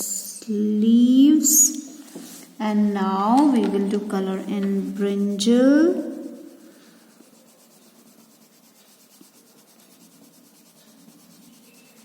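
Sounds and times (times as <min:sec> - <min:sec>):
pencil scratching on paper: 0:03.4 - 0:12.0.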